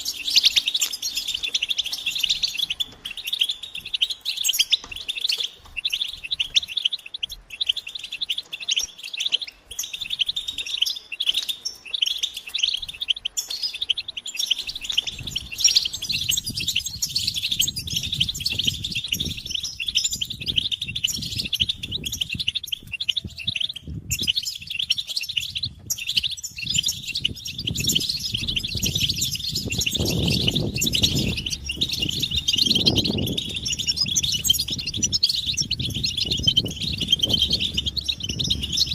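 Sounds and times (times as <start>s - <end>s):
goldfinches twittering: 0.0s - 38.9s
low rumbling noise: 28.1s - 38.9s.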